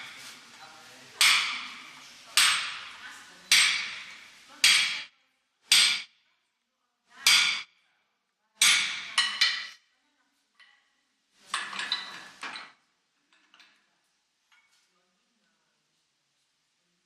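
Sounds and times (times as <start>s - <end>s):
hammer striking iron on anvil: 1.2s - 1.8s, 2.4s - 5.1s, 5.7s - 6.1s, 7.2s - 7.7s, 8.6s - 9.7s.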